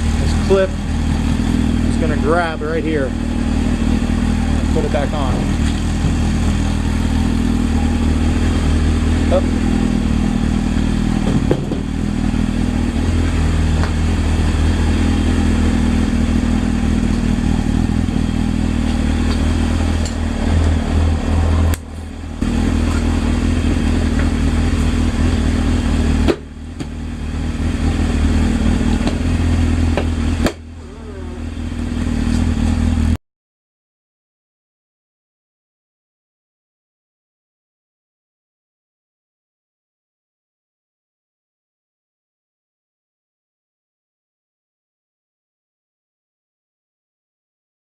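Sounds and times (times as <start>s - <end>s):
motorcycle engine running: 0.0s - 33.2s.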